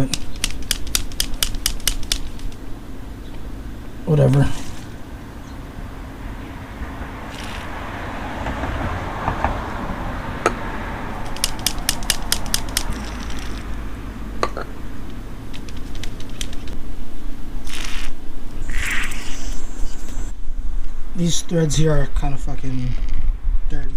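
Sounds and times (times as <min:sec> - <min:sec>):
cable clicks: 0:00.0 - 0:02.6, 0:11.2 - 0:13.8, 0:15.5 - 0:16.8.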